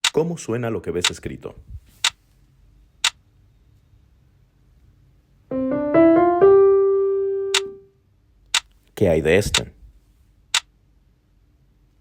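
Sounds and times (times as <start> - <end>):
piano rising phrase: 5.5 - 7.9.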